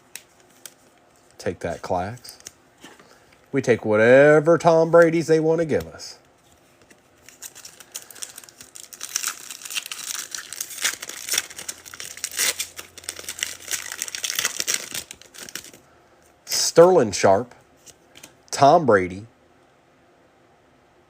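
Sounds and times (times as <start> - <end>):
foil wrapper tearing and crinkling: 7.2 - 15.8.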